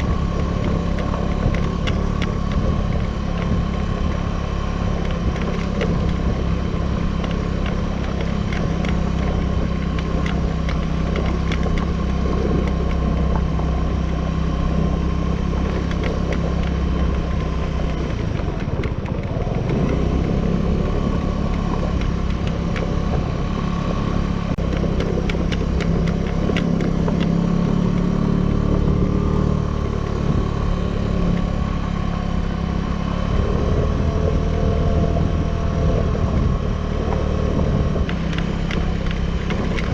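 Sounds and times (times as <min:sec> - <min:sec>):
light clicks and rattles: 0:00.0 - 0:14.0, 0:15.3 - 0:23.2, 0:33.7 - 0:39.9
scooter engine running: 0:00.0 - 0:39.9.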